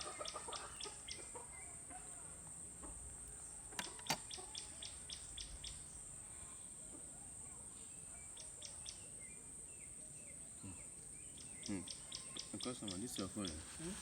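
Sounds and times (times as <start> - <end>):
bird chirps: 7.5 - 14.0.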